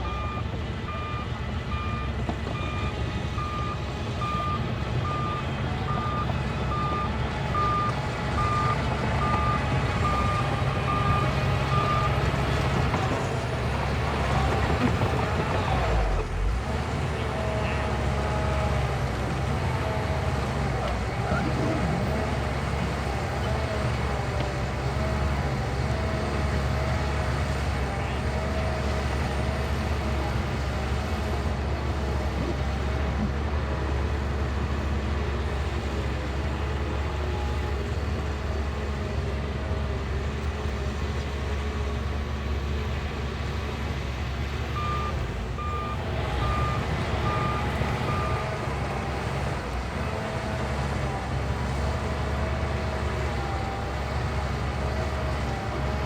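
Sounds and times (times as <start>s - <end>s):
reversing alarm beeps: 0.0s - 12.2s, 44.8s - 48.6s
bulldozer diesel engine running: 0.0s - 56.0s.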